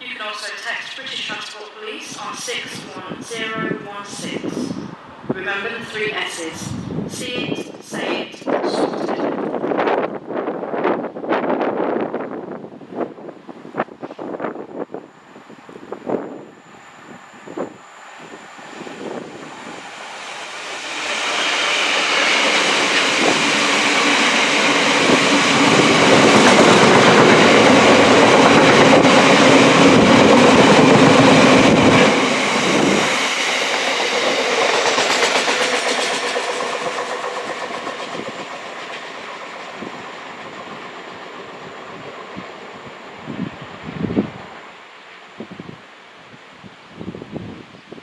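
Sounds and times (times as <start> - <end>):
train passing: 0.0 - 47.7.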